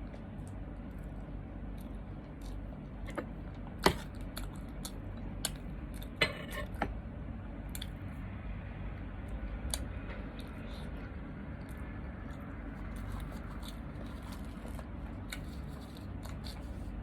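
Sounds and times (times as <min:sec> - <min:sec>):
low background hum: 0:00.0 - 0:17.0
chewing: 0:01.8 - 0:03.2, 0:11.6 - 0:17.0.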